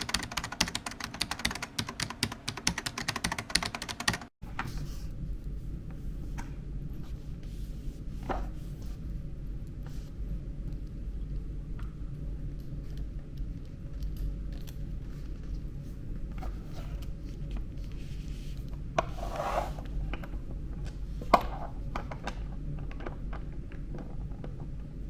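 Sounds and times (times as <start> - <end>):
steady low hum: 0.0 - 25.0
scraping rub: 17.8 - 19.9.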